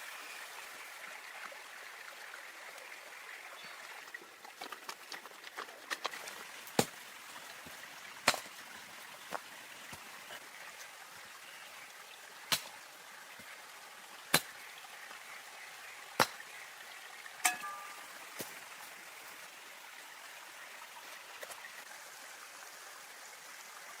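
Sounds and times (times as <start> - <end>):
stream trickling: 0.0 - 24.0
blade chopping wood: 8.2 - 8.5, 12.5 - 12.7, 16.2 - 16.4.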